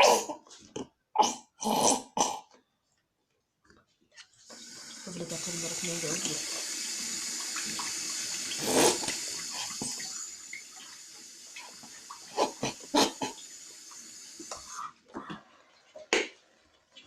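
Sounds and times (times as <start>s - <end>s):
water running from tap: 4.4s - 17.0s.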